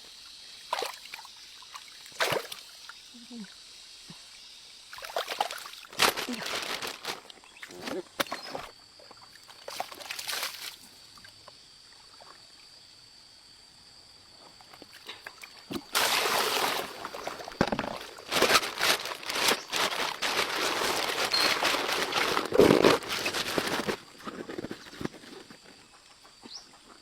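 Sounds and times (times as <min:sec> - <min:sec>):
water splashing in a stream: 0:00.6 - 0:03.0, 0:04.8 - 0:12.5, 0:15.0 - 0:23.9.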